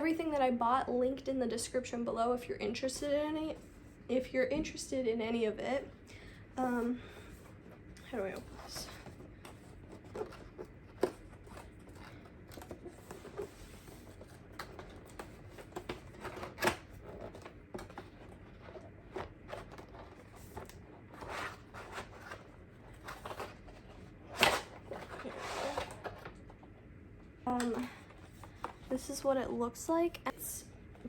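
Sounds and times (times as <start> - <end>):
cardboard packaging rustling: 7.2 - 26.6.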